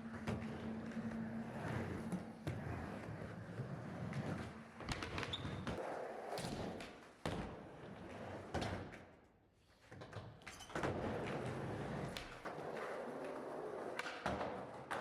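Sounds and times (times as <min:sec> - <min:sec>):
skateboard wheels rumbling: 0:00.0 - 0:08.8, 0:10.7 - 0:15.0.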